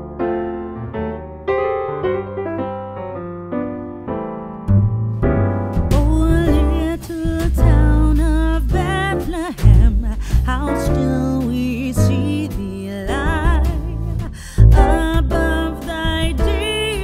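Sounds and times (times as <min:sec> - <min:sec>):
piano notes and chords: 0:00.0 - 0:17.0
heavy bass and drums: 0:05.2 - 0:17.0
person singing: 0:05.9 - 0:17.0.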